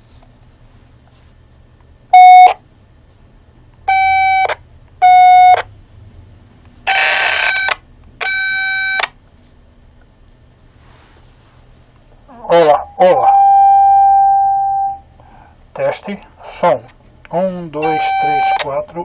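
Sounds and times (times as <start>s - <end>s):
radio electronic beeps: 2.2s - 2.6s, 3.9s - 5.7s, 12.3s - 15.0s, 17.8s - 18.8s.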